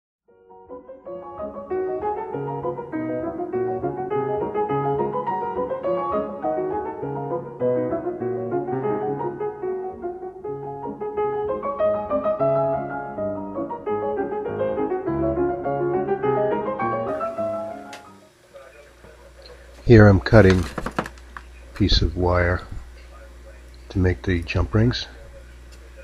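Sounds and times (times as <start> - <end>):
piano music: 0.3 - 18.3.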